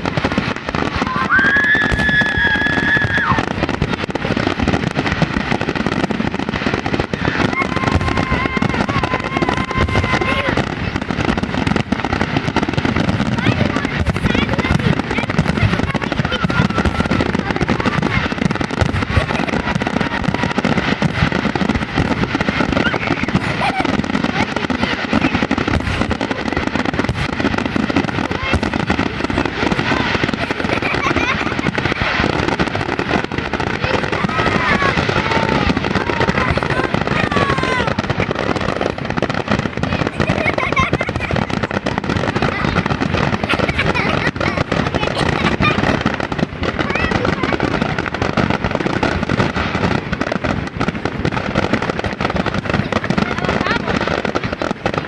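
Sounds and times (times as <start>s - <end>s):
fireworks bangs and crackling: 0.0s - 55.0s
firework whistle: 1.0s - 3.8s, 18.0s - 24.3s.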